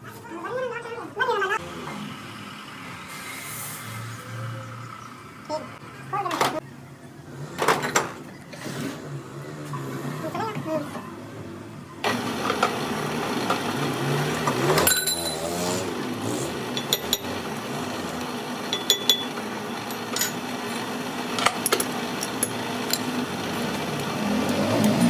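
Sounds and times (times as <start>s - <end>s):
metal tools clinking: 14.6s - 15.7s, 16.7s - 17.4s, 18.7s - 20.5s, 21.3s - 23.1s
metal ring: 14.8s - 15.5s, 18.7s - 19.4s.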